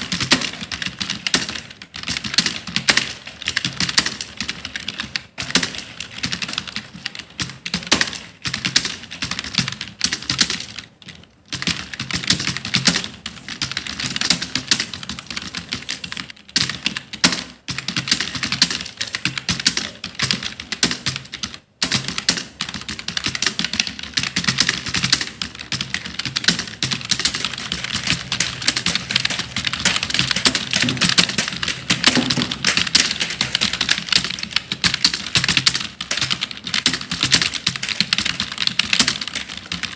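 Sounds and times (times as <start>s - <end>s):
fast typing on keyboard: 0.0s - 39.9s.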